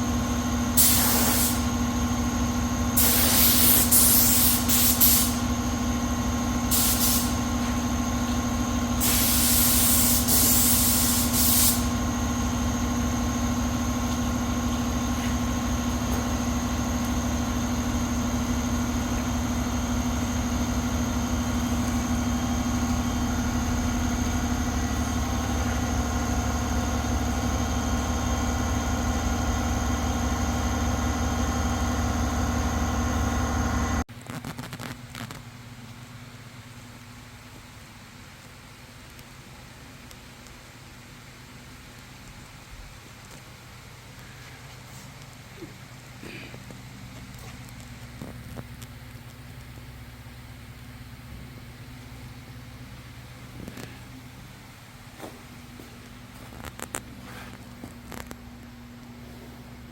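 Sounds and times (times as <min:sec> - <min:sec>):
workshop machine humming: 0:00.0 - 0:34.1
compressed air hissing: 0:00.8 - 0:01.7, 0:03.0 - 0:05.5, 0:06.7 - 0:07.5, 0:09.0 - 0:12.0.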